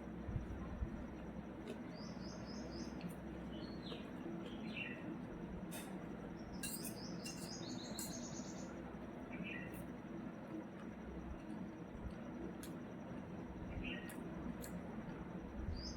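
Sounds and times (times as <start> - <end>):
low steady hum: 0.0 - 15.9
birds chirping: 1.8 - 5.1.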